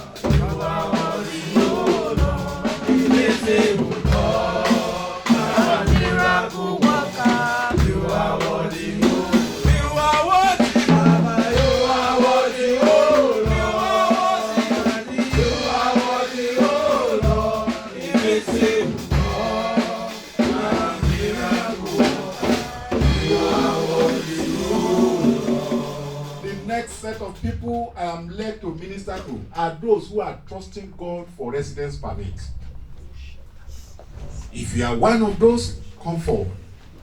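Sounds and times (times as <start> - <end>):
people singing: 0.0 - 27.4
worship band playing: 0.0 - 32.7.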